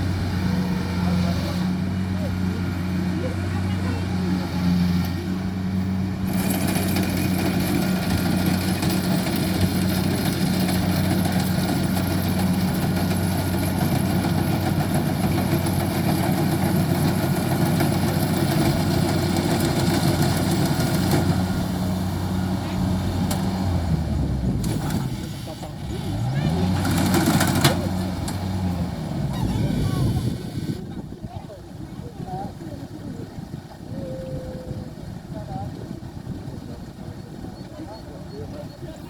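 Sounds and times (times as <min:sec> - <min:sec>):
combine harvester engine drone: 0:00.0 - 0:39.0
threshing machinery clatter: 0:06.2 - 0:30.8.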